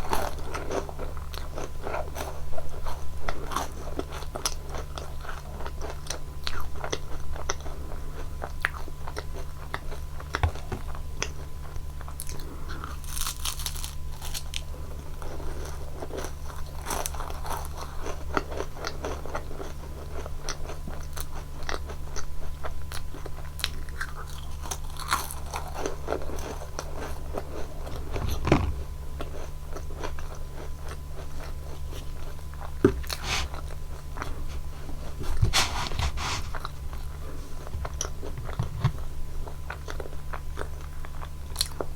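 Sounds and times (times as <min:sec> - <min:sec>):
crunching pastry biscuits: 0:00.0 - 0:41.9
wet chewing: 0:23.3 - 0:41.9.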